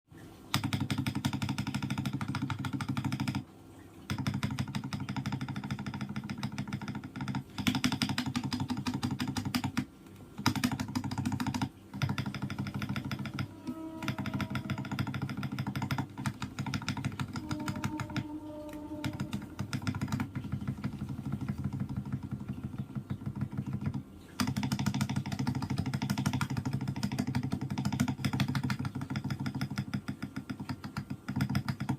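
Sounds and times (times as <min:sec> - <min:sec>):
mechanical keyboard typing: 0:00.5 - 0:03.4, 0:04.1 - 0:31.9.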